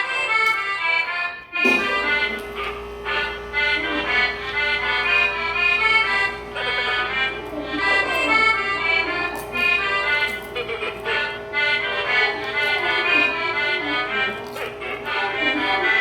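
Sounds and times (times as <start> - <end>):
accordion music: 0.0 - 16.0.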